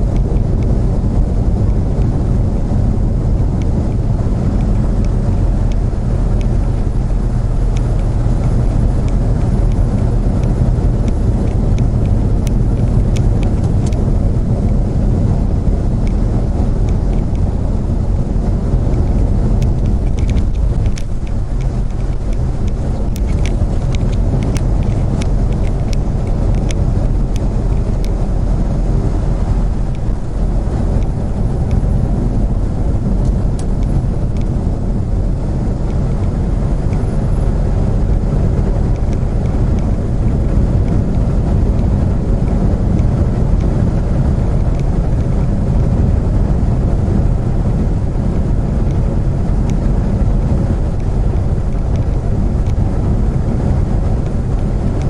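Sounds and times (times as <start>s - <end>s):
road noise: 0.0s - 55.0s
vehicle engine rumble: 0.0s - 55.0s
light ticks: 3.6s - 14.8s, 16.0s - 17.5s, 18.9s - 28.3s, 29.0s - 34.6s, 35.8s - 46.1s, 48.4s - 52.9s, 53.5s - 55.0s.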